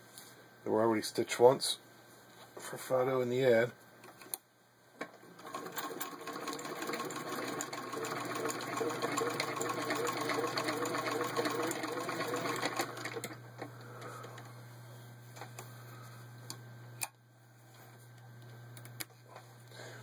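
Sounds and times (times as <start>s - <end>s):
sewing machine stitching: 5.3s - 13.4s.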